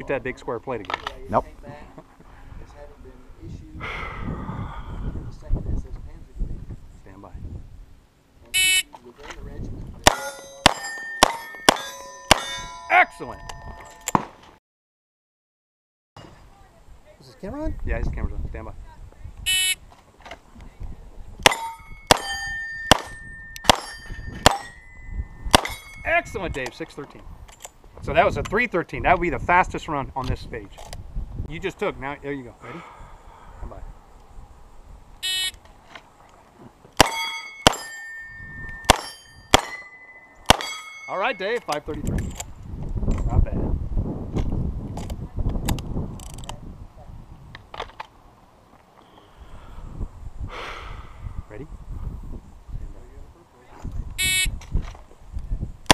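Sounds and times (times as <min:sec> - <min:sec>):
steel plate ringing clang: 0:10.1 - 0:14.2, 0:21.4 - 0:26.4, 0:37.0 - 0:41.6
shot timer beep: 0:19.5 - 0:19.8, 0:35.2 - 0:35.6, 0:54.2 - 0:54.5
revolver shots: 0:38.8 - 0:41.1.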